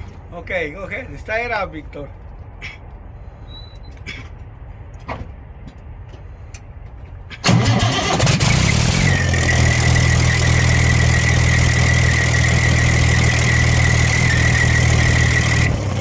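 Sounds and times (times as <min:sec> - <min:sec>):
engine starting and idling: 0:07.4 - 0:16.0.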